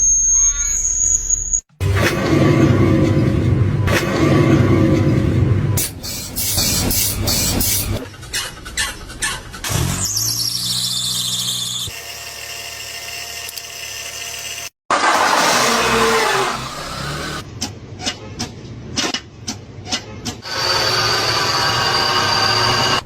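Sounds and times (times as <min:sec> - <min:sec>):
loud squeal: 0:00.0 - 0:01.6, 0:10.0 - 0:11.9
car engines starting: 0:07.9 - 0:10.5, 0:14.9 - 0:17.5.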